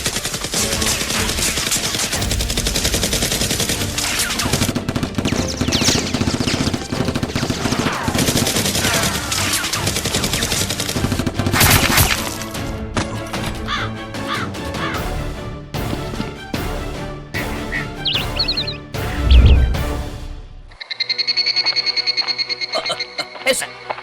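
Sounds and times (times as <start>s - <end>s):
automatic gunfire: 0.0s - 12.1s.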